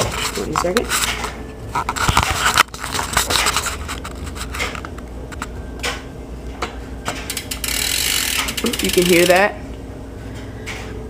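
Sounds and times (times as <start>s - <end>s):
scraping and rubbing handling noise: 0.0s - 5.6s.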